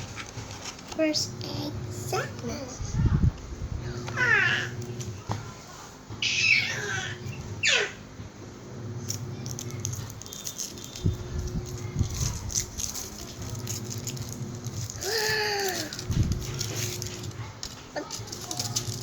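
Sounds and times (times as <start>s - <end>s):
plastic wrapper crinkling: 9.4s - 19.0s.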